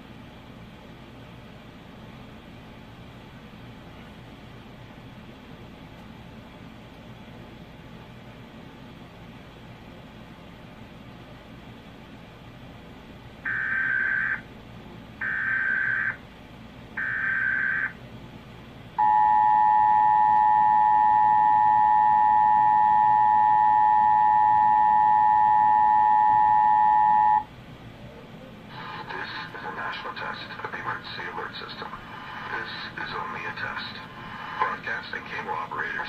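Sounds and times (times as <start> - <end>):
faint hiss and low hum: 0.0 - 36.0
two-tone alert signal: 19.0 - 27.4.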